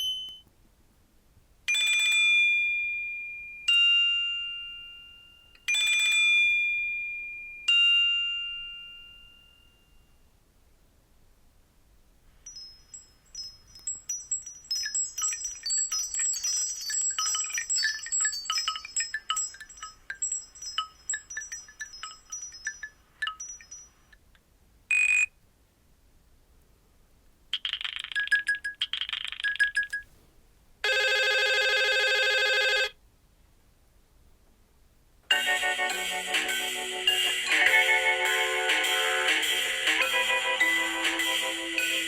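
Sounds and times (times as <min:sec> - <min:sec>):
phone beep: 0:00.0 - 0:00.4, 0:30.8 - 0:32.9
tinkling chime ringtone: 0:00.0 - 0:00.4, 0:01.7 - 0:10.3, 0:12.4 - 0:24.2, 0:27.9 - 0:30.3, 0:30.9 - 0:32.9, 0:35.3 - 0:42.0.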